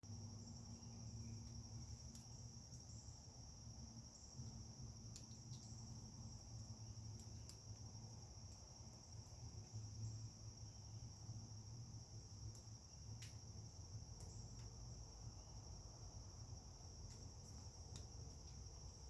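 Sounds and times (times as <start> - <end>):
insects trilling: 0.1 - 19.0
light ticks: 1.5 - 2.4, 5.1 - 5.8, 7.1 - 7.8, 12.4 - 13.5, 14.1 - 14.9, 17.0 - 19.0.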